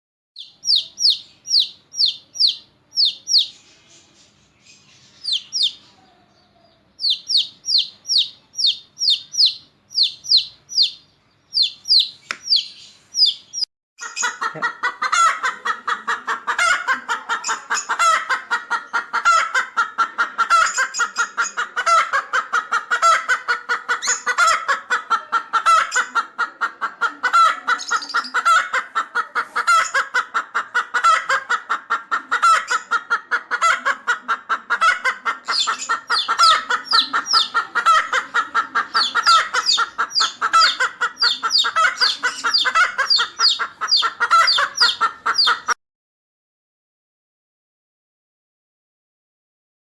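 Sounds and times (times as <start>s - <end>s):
high-pitched chirps: 0.4s - 3.6s, 5.2s - 5.9s, 7.0s - 13.7s
chickens clucking: 0.4s - 45.8s.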